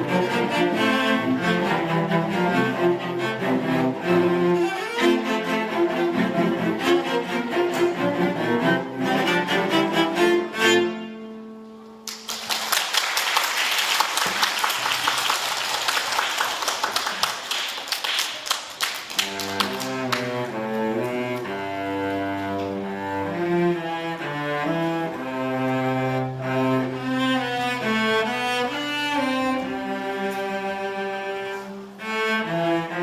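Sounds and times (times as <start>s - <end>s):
cello and double bass: 0.0s - 12.0s, 19.2s - 33.0s
string orchestra playing: 0.0s - 12.0s, 19.2s - 33.0s.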